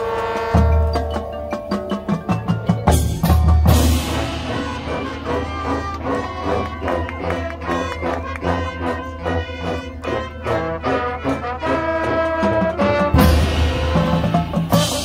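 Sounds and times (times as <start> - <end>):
drums: 0.0 - 8.6, 10.3 - 15.0
marching band brass: 0.0 - 15.0.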